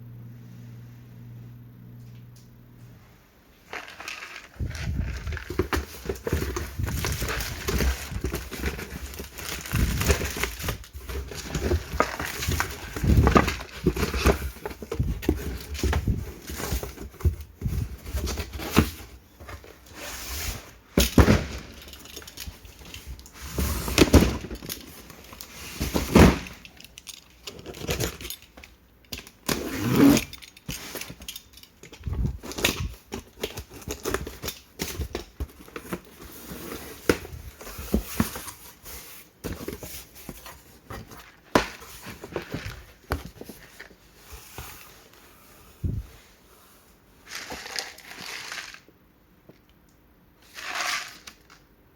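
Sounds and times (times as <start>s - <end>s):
plastic wrap crinkling and tearing: 3.7s - 14.2s
cardboard rustling: 3.7s - 28.6s, 29.4s - 46.4s.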